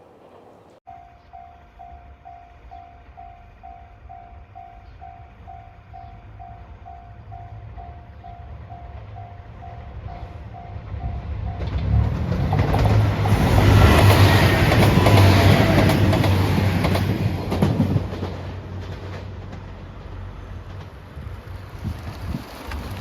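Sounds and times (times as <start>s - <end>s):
train rumbling past: 0.0s - 23.0s
crossing warning bell dinging: 0.9s - 17.7s
wheels clacking over rail joints: 7.4s - 23.0s.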